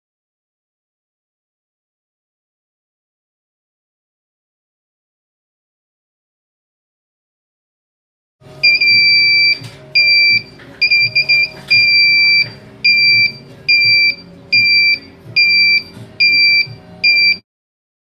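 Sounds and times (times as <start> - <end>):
electronic alarm buzzer beeping: 8.6 - 17.4.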